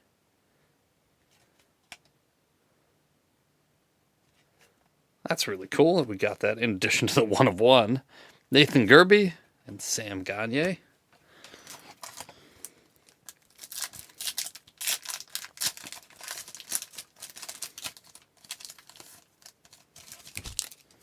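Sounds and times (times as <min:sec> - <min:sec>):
cards rustling: 0:11.4 - 0:21.0
wrapper crinkling and tearing: 0:11.5 - 0:21.0.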